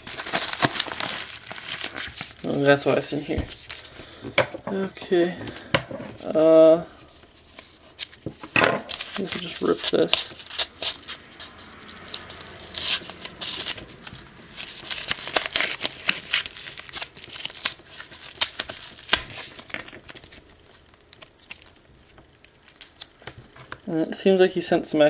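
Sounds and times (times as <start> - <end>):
paper envelope ripping: 0.0 - 4.0, 8.8 - 23.8
packaging crinkling and rustling: 0.0 - 4.3, 5.1 - 23.9.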